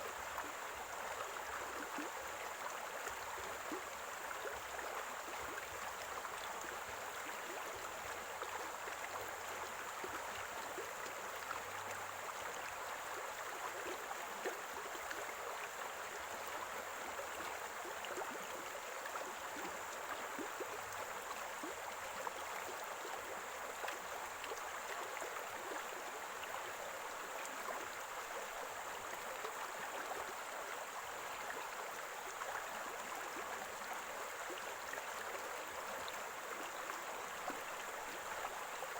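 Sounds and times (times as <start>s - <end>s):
stream gurgling over stones: 0.0s - 38.9s.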